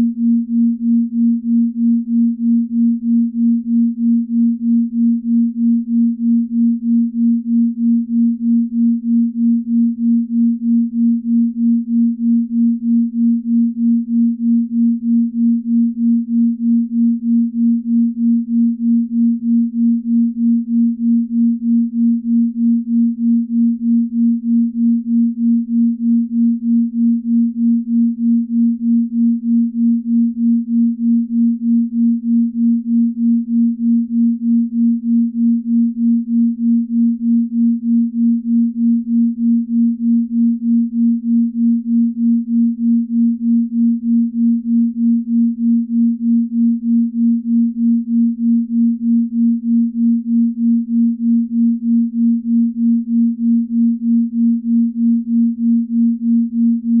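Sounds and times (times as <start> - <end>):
low pure tone pulsing: 0.0 - 57.0.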